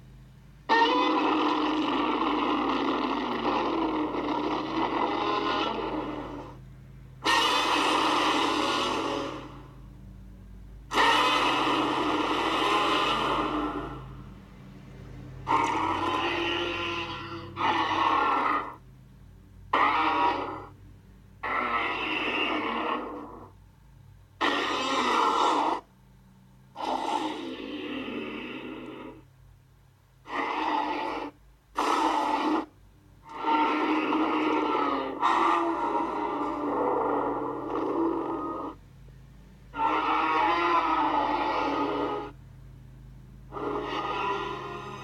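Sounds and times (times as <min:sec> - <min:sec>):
steady low hum: 0:00.0 - 0:45.0
monster roars: 0:00.7 - 0:06.6, 0:07.2 - 0:09.7, 0:10.9 - 0:14.2, 0:15.5 - 0:18.8, 0:19.7 - 0:20.7, 0:21.4 - 0:23.5, 0:24.4 - 0:25.9, 0:26.8 - 0:29.2, 0:30.2 - 0:32.7, 0:33.3 - 0:38.8, 0:39.7 - 0:42.4, 0:43.5 - 0:45.0.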